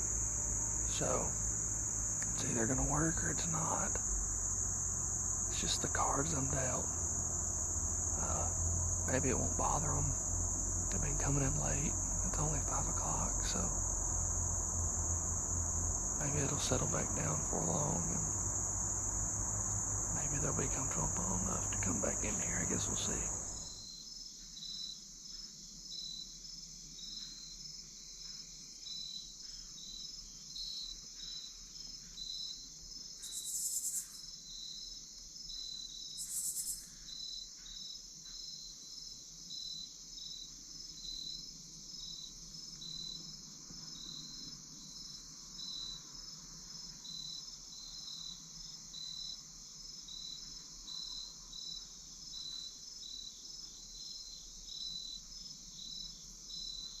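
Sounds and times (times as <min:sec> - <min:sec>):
high-pitched hissing bursts: 0:00.0 - 0:15.5, 0:16.2 - 0:23.8, 0:33.2 - 0:34.2, 0:36.2 - 0:36.9
cricket-like chirp: 0:00.0 - 0:57.0
insects buzzing: 0:00.0 - 0:57.0.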